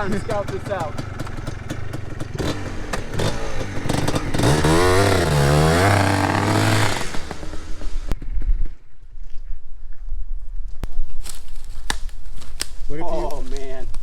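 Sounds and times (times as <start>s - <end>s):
two-stroke engine revving: 0.0s - 8.2s.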